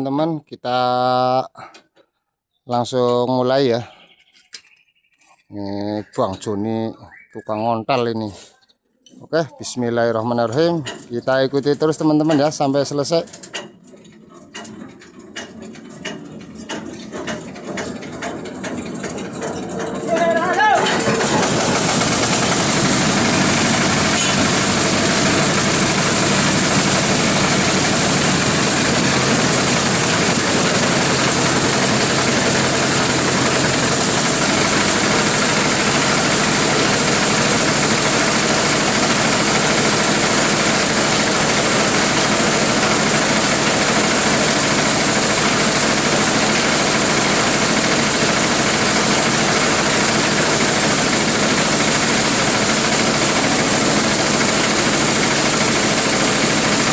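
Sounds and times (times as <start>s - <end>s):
machine drone: 20.8s - 42.4s.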